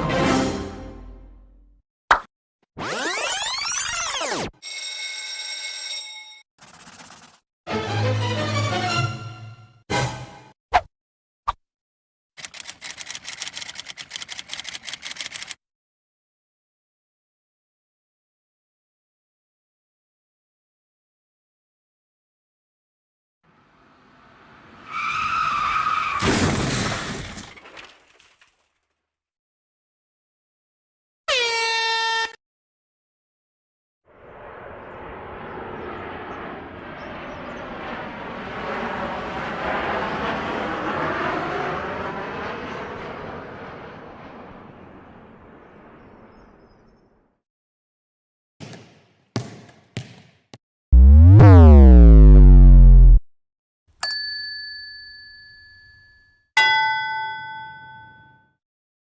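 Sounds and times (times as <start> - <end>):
car crash with shattering: 26.0 - 28.4
low electronic buzz: 51.0 - 53.2.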